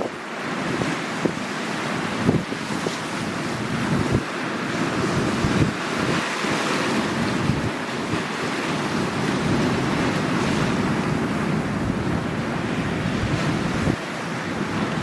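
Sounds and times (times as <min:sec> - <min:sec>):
sea waves washing on shore: 0:00.0 - 0:15.0
wind buffeting microphone: 0:00.0 - 0:15.0.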